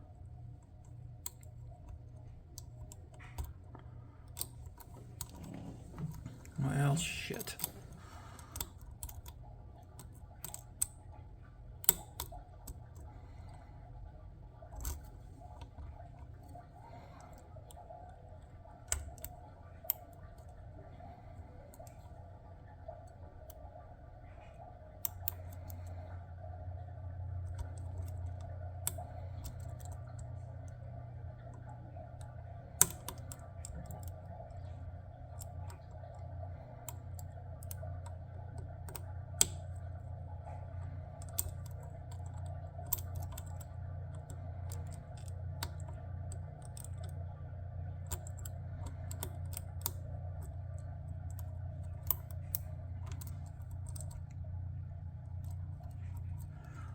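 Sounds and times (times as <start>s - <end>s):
steady low hum: 0.0s - 56.9s
lock pick clicking on pins: 32.7s - 34.1s, 41.2s - 47.1s.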